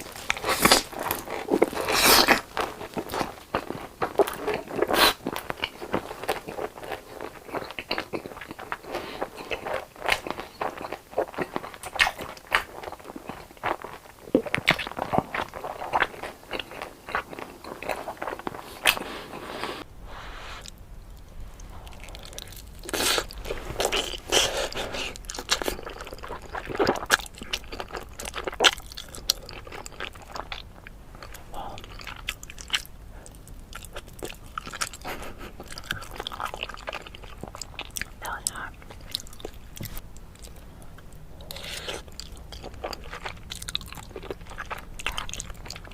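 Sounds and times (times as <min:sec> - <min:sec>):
crunchy bites and chewing: 0:00.0 - 0:19.0.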